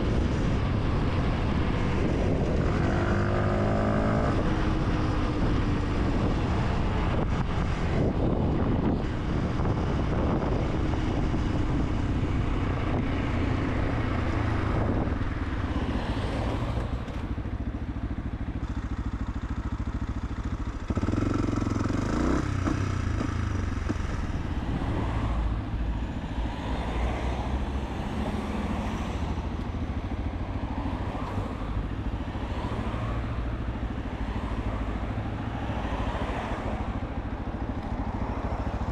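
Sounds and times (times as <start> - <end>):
motorcycle engine revving: 0.0 - 17.4, 18.0 - 25.4
wind and road noise: 0.0 - 38.9.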